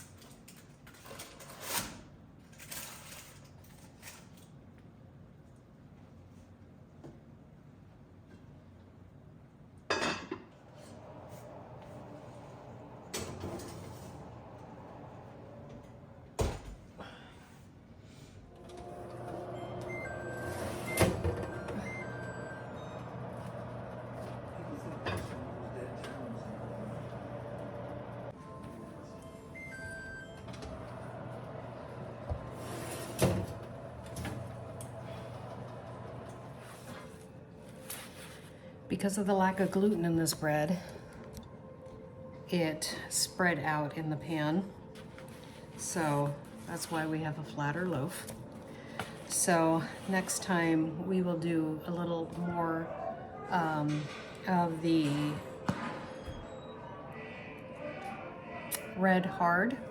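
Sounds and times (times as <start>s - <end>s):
kitchenware clattering: 9.9s - 10.5s
steady low hum: 10.5s - 37.6s.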